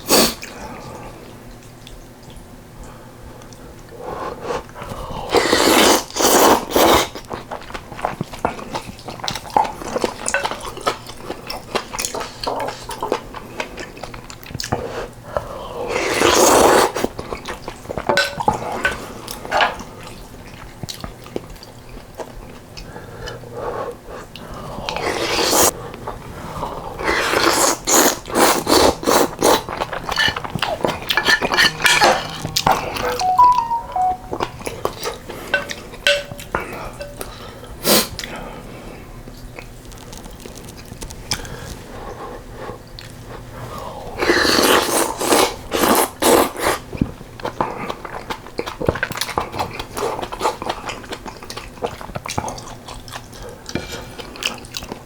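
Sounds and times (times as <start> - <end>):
utensils knocking on bowl: 35.6 - 37.2.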